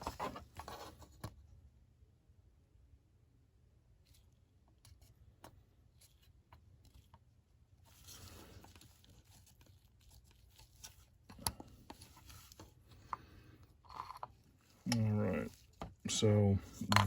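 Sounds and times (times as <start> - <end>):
soft rustle: 4.0 - 16.9.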